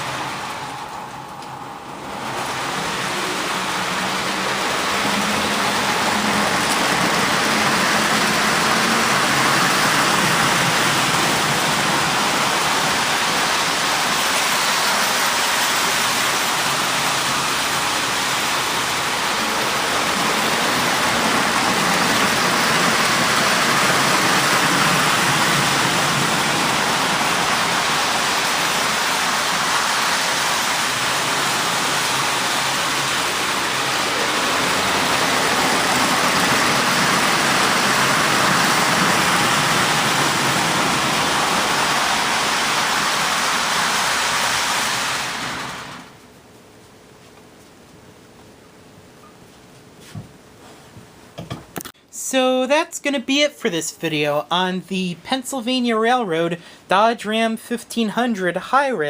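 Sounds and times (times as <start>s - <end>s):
model train wheels rolling: 0.0s - 46.2s.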